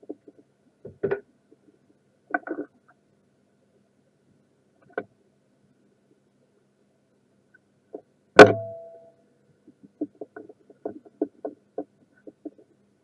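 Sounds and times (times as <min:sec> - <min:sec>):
metallic clank ringing: 0:08.4 - 0:09.1.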